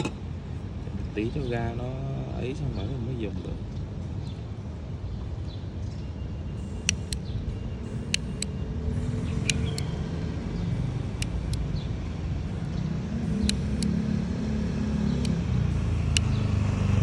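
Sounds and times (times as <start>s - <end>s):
vehicle engine running: 7.9s - 17.0s.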